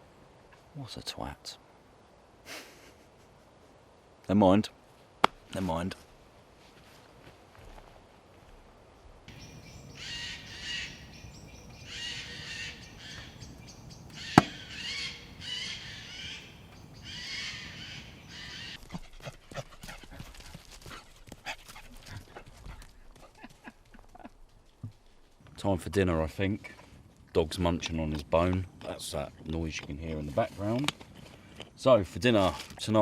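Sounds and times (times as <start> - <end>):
harsh drawn-out animal calls: 9.3 - 18.8
sharp loud crack: 14.2 - 15.0.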